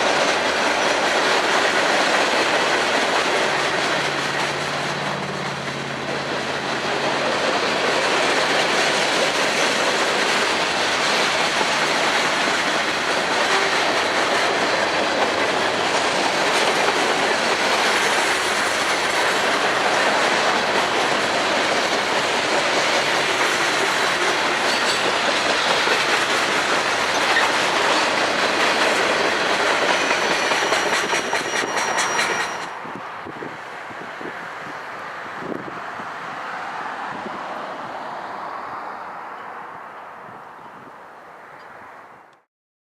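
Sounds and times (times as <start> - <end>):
train wheels clacking over rail joints: 0.0 - 32.8.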